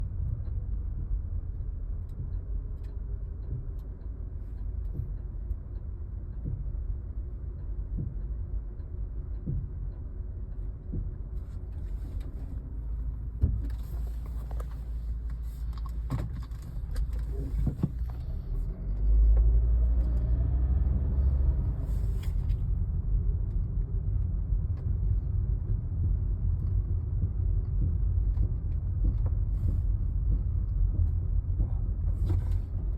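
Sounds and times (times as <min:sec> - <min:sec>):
car rumbling in motion: 0:00.0 - 0:32.9
drivetrain knocks: 0:07.9 - 0:08.3, 0:09.4 - 0:09.8, 0:13.3 - 0:13.9, 0:25.6 - 0:32.9.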